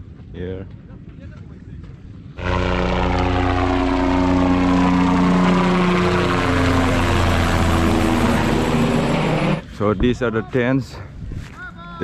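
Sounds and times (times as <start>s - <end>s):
helicopter engine and rotor whine: 2.4s - 9.7s.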